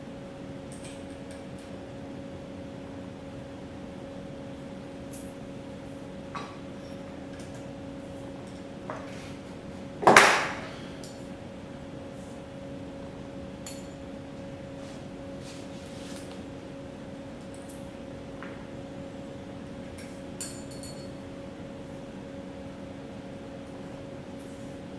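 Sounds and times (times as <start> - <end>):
steady electrical hum: 0.0 - 24.9
metal tools ticking and tapping: 20.4 - 21.1.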